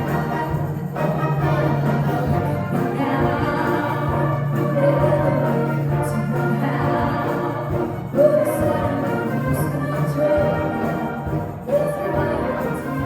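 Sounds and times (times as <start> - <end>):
choir singing: 0.0 - 13.0
instrumental accompaniment: 0.0 - 13.0.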